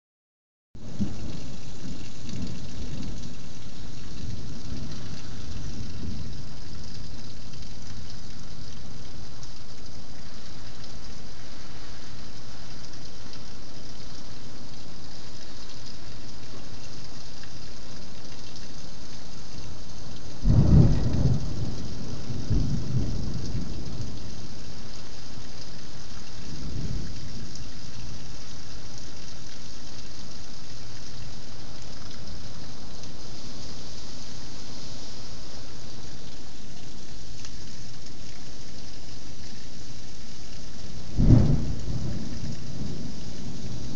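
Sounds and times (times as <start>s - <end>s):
thunder rumbling: 0.8s - 8.5s, 20.4s - 25.1s, 26.2s - 28.3s, 41.0s - 43.9s
rain hissing: 0.8s - 43.9s
loud thunderclap: 20.4s - 24.4s, 41.1s - 43.9s.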